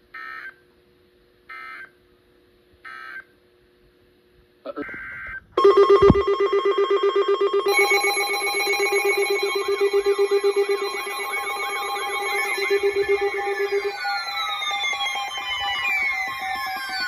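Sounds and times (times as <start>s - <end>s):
fast warbling tone: 5.6s - 17.0s
pulsing buzz-like alert tone: 5.6s - 17.0s
steady high-pitched tones: 5.6s - 17.0s.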